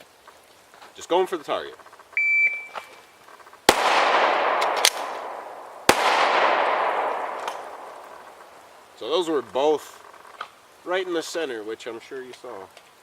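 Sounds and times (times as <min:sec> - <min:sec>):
shot timer beep: 0:02.2 - 0:02.9
pistol reload: 0:03.7 - 0:05.3
pistol shots echoing: 0:03.7 - 0:08.5.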